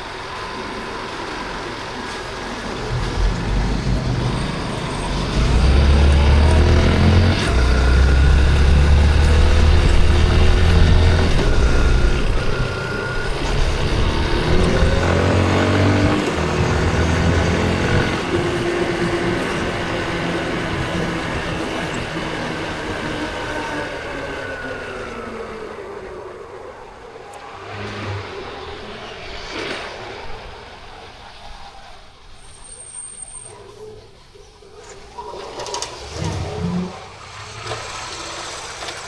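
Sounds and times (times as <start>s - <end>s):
low rumble of traffic: 0.0s - 29.1s
motorcycle engine running: 2.8s - 23.6s.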